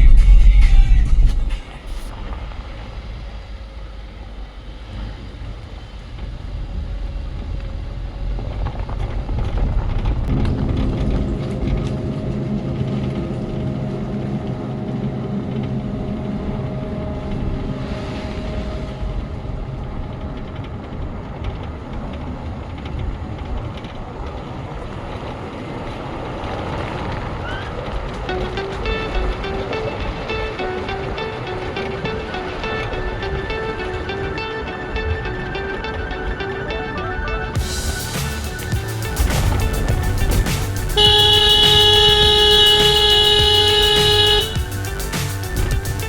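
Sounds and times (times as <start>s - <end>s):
steady engine hum: 0.0s - 46.0s
vehicle road and engine noise: 37.5s - 46.0s.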